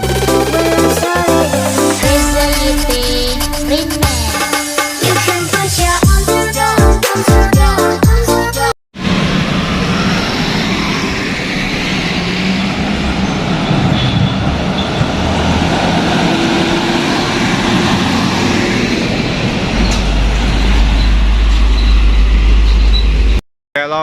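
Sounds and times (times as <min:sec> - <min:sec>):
deep rumble: 0:02.0 - 0:04.5.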